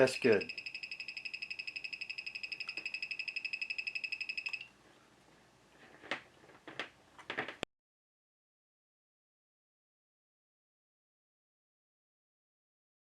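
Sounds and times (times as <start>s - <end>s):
pulsing high beep: 0.0s - 4.6s.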